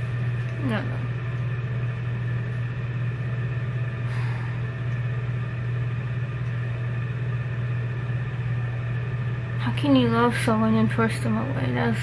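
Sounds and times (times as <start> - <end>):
low mechanical hum: 0.0 - 12.0.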